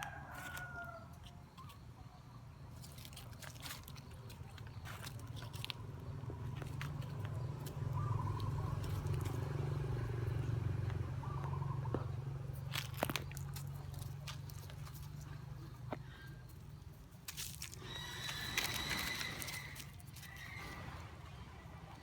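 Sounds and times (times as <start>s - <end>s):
dogs scuffling and biting: 12.5s - 20.6s.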